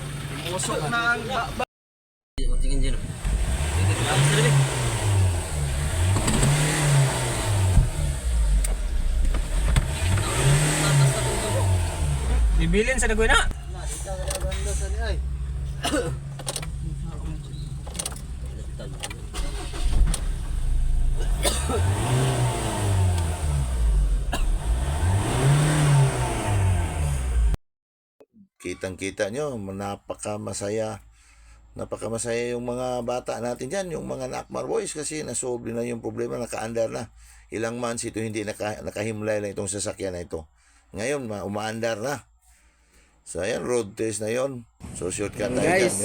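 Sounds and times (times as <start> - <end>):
diesel engine revving: 2.4 - 27.6, 44.9 - 46.0.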